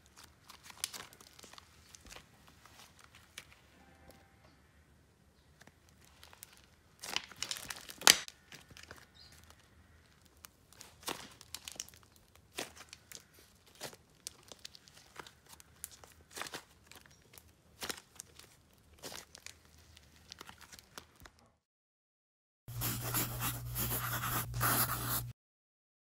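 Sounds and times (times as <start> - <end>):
slime with beads crackling: 0.0 - 3.5, 5.8 - 21.3.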